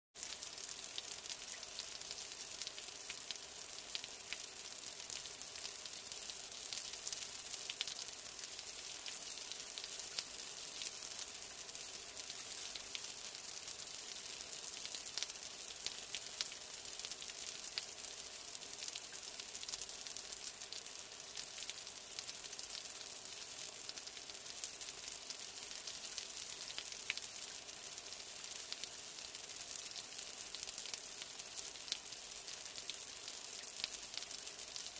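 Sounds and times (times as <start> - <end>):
steady rain: 0.2 - 34.9.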